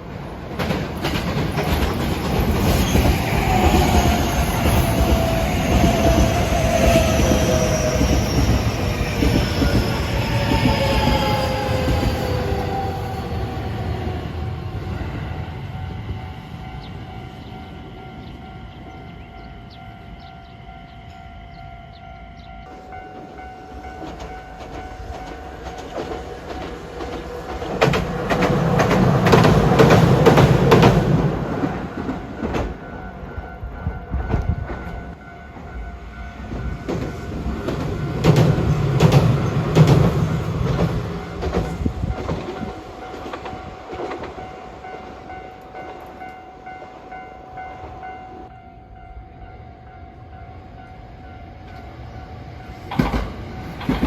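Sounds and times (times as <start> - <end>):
train wheels clattering: 0.4 - 13.2, 23.1 - 33.0, 36.5 - 47.0, 52.7 - 54.0.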